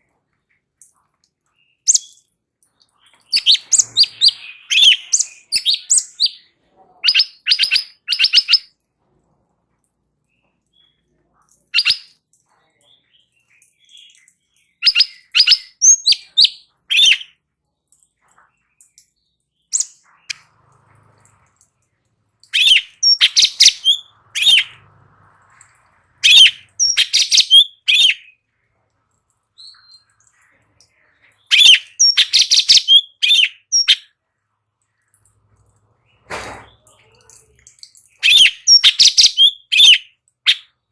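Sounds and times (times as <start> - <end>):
bird chirping rapidly: 1.9 - 2.2, 3.2 - 8.7, 11.7 - 12.1, 13.8 - 17.3, 19.6 - 20.4, 22.4 - 24.9, 25.6 - 28.4, 31.4 - 34.1, 38.0 - 40.8.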